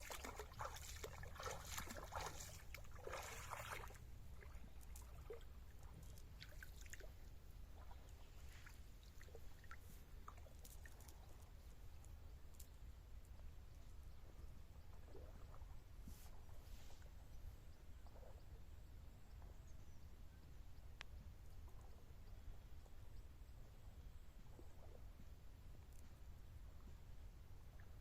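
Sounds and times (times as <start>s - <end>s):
faint drips: 0.0s - 7.1s
water sloshing and splashing: 0.0s - 11.4s.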